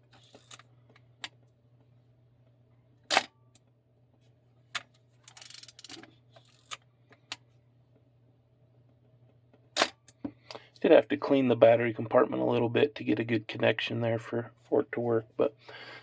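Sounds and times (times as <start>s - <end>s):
film advance lever ratcheting: 5.3s - 6.8s.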